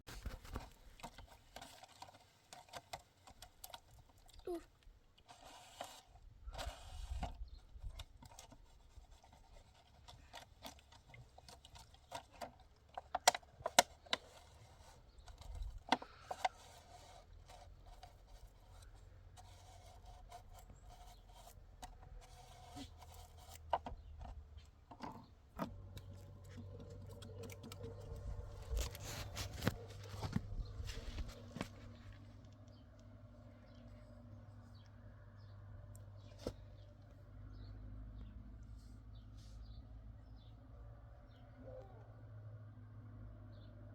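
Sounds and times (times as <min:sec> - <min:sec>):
scraping and rubbing: 0:00.1 - 0:04.6, 0:05.2 - 0:32.5.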